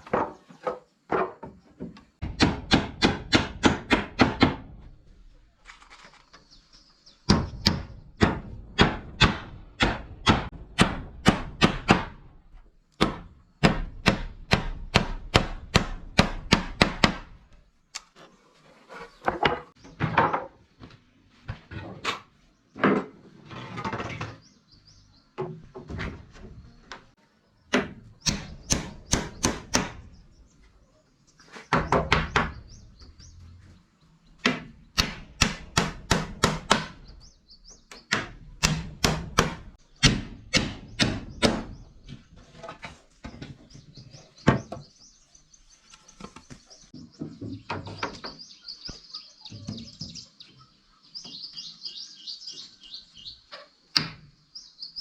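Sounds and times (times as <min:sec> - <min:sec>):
hand tool striking wood: 0:27.7 - 0:30.0, 0:34.4 - 0:37.1, 0:37.9 - 0:42.2.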